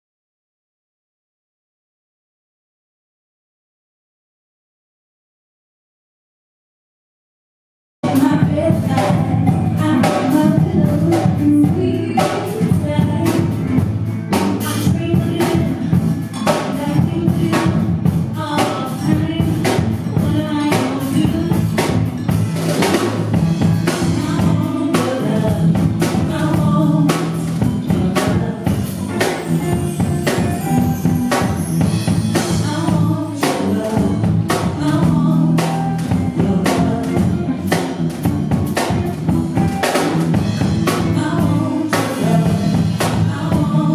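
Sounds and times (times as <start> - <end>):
person singing: 8.0 - 22.0, 23.9 - 31.4, 32.2 - 38.0, 40.7 - 43.9
bass: 8.0 - 43.9
drum kit beat: 8.0 - 43.9.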